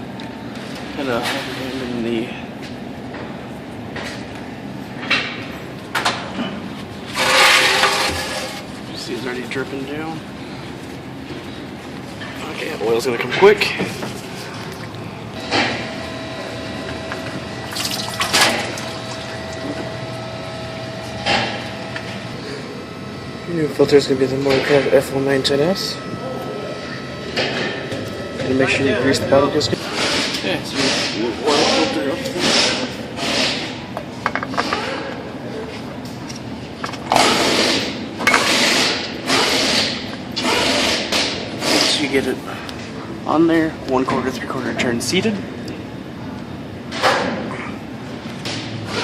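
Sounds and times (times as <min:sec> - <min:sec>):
oil pouring and splashing: 0:17.7 - 0:19.4.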